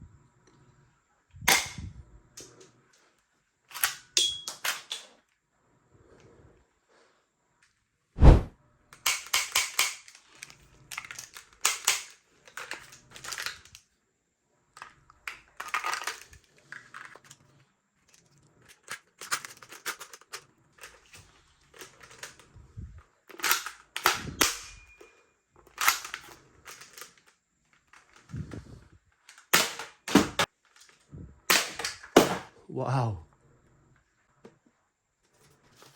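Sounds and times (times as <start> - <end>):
toy guns clicking and snapping: 1.5 - 2.7, 3.7 - 5.2, 8.9 - 13.9, 14.8 - 17.4, 18.1 - 22.5, 23.2 - 28.4, 29.2 - 32.5.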